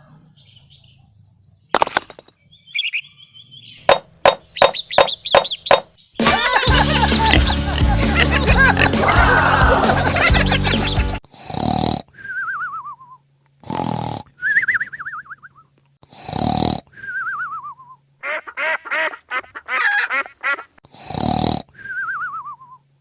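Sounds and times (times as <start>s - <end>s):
cartoon snoring: 3.9s - 12.1s, 13.6s - 14.4s, 16.1s - 17.0s, 19.4s - 21.8s
grunting noises: 3.9s - 12.1s, 13.6s - 14.3s, 16.2s - 16.9s, 18.3s - 21.8s.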